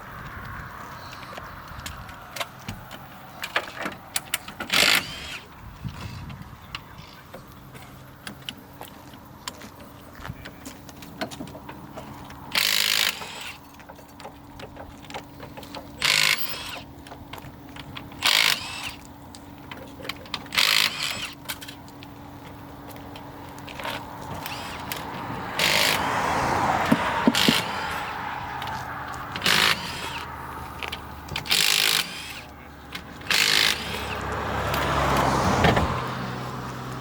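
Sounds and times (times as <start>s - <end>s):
tools clicking and clanking: 1.2s - 36.0s
impact wrench bursts: 4.5s - 5.5s, 12.5s - 13.6s, 16.0s - 16.9s, 18.1s - 19.0s, 20.4s - 21.4s, 23.8s - 26.1s, 26.8s - 34.3s.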